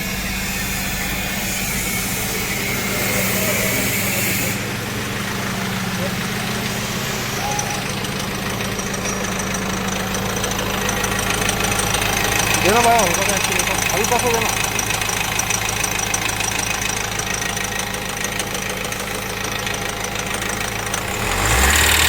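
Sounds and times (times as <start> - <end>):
diesel engine idling: 0.0 - 22.0
light fast ticking: 4.6 - 21.8.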